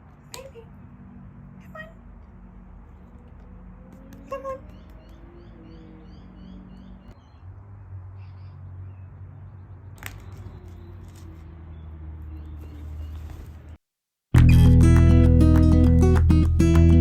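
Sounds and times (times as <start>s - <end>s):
high bird chirps: 4.1s - 7.4s.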